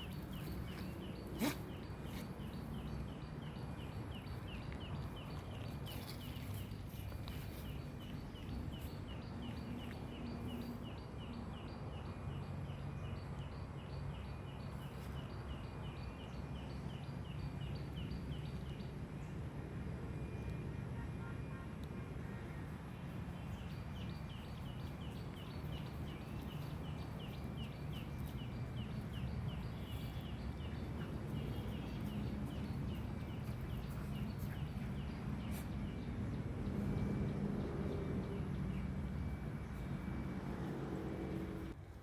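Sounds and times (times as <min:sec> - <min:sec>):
low outdoor rumble: 0:13.2 - 0:42.0
bird chirping: 0:23.0 - 0:40.8.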